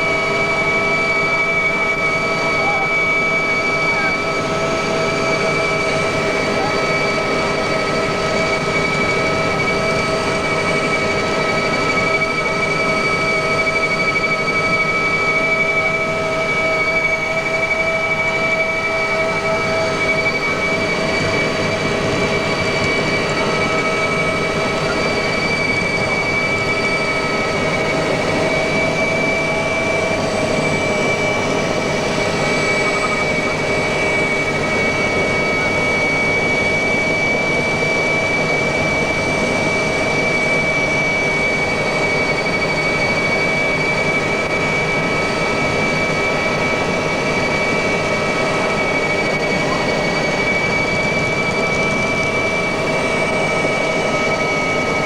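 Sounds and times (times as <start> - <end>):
helicopter engines and rotor: 0.0 - 55.0
steady whining tones: 0.0 - 55.0.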